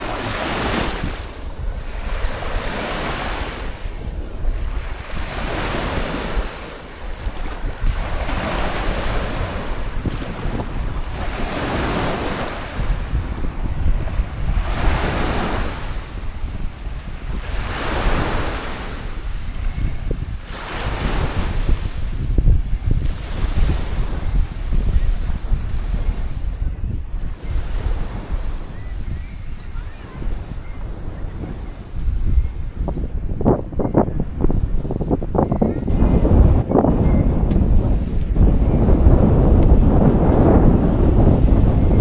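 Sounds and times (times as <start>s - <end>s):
waves breaking on beach: 0.0s - 22.3s
wind rumbling on microphone: 0.0s - 42.0s.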